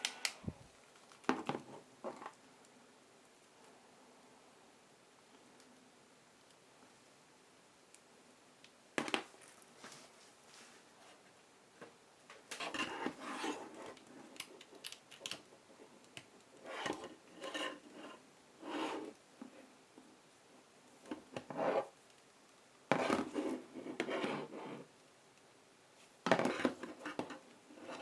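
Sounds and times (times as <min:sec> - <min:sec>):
rubbing and scraping noises: 0:12.5 - 0:14.9, 0:15.5 - 0:19.7, 0:21.1 - 0:22.0, 0:22.9 - 0:24.9, 0:26.0 - 0:28.0.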